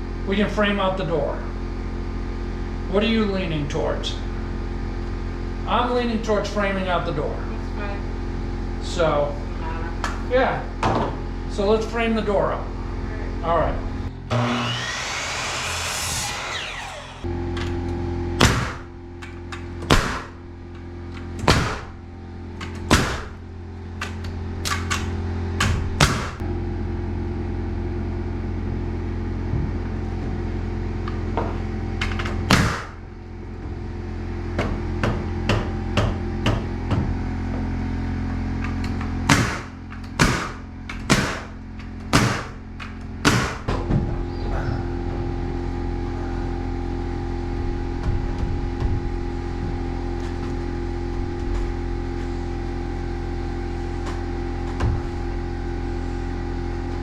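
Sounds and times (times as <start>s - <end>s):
mechanical hum: 0.0s - 57.0s
hammer striking nails: 18.4s - 18.9s, 19.8s - 20.4s, 21.4s - 22.0s, 22.6s - 23.4s, 25.6s - 26.4s, 32.5s - 33.0s, 39.3s - 41.5s, 42.1s - 42.6s, 43.2s - 43.7s.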